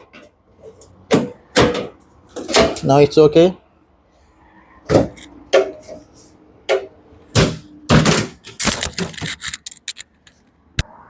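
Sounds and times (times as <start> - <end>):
dryer panels clicking and knocking: 1.0 - 3.0, 6.6 - 8.6.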